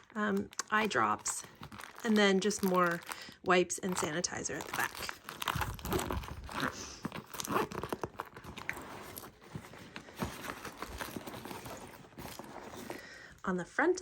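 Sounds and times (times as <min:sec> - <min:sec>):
plastic packets crinkling: 0:00.0 - 0:13.4.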